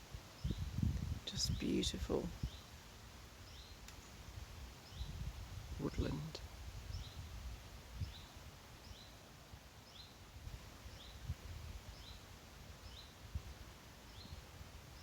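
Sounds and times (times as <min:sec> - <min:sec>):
faint woodland background: 0:00.0 - 0:15.0.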